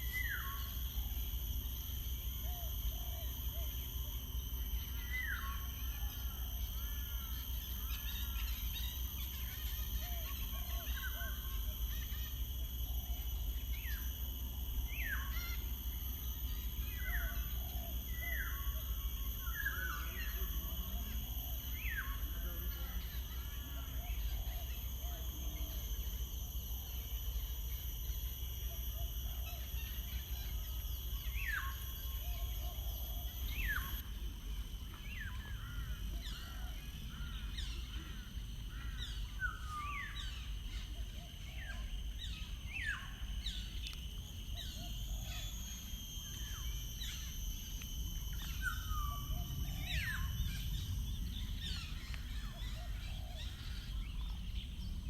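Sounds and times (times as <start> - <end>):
birds whistling and chirping: 35.0 - 55.0.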